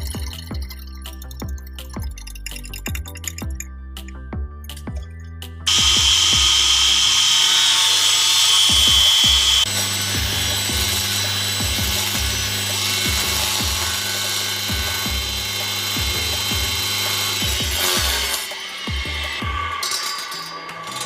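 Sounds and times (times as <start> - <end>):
music with thumping beat: 0.0 - 7.0, 8.5 - 20.1
power tool whining: 5.7 - 21.0.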